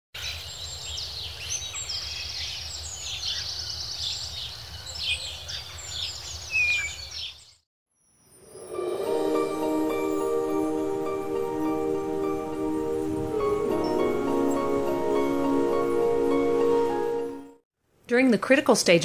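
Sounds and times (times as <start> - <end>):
birds chirping in chorus: 0.2 - 7.6
music: 8.3 - 17.6.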